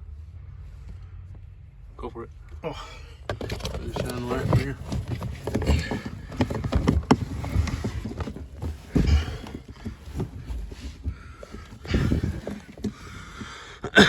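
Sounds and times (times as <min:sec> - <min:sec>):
heavy thumps: 0:03.1 - 0:13.8
tools and parts being handled: 0:03.2 - 0:13.5.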